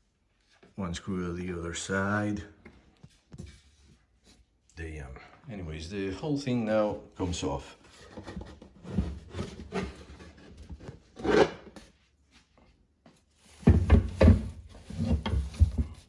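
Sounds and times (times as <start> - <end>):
wood scraping and rubbing: 7.3 - 11.6, 13.5 - 16.0
heavy thumps: 13.6 - 16.0.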